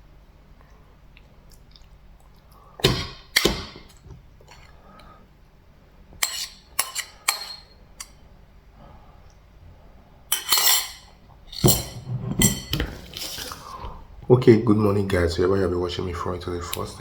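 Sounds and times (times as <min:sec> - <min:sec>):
dishes and cutlery clinking: 0:06.2 - 0:08.2, 0:10.3 - 0:13.5.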